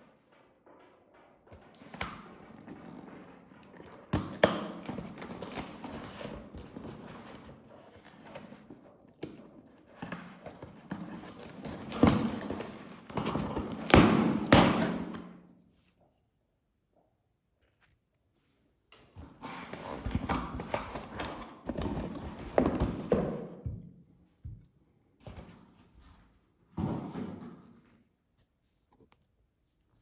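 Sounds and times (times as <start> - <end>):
packaging rustling: 4.2 - 15.2.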